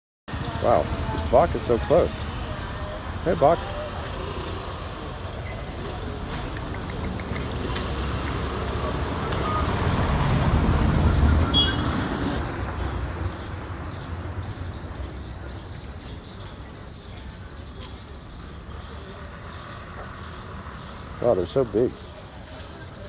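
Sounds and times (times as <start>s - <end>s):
vehicle passing by: 0.3s - 14.9s.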